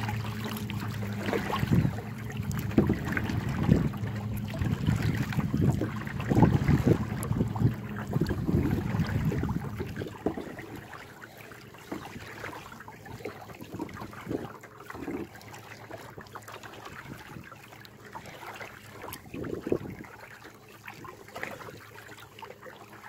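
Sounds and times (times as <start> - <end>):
water splashing around kayak: 0.0 - 23.0
wind buffeting microphone: 1.0 - 10.5, 19.2 - 20.0.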